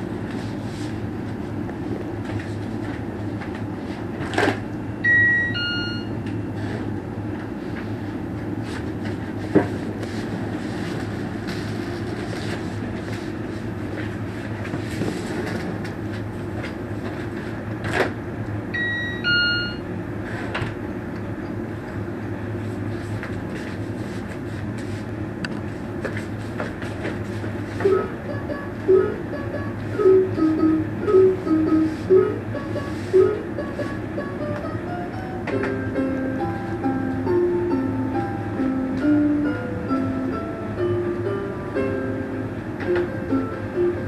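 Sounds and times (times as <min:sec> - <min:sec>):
two-note doorbell chime: 0:05.0 - 0:06.1, 0:18.8 - 0:19.8.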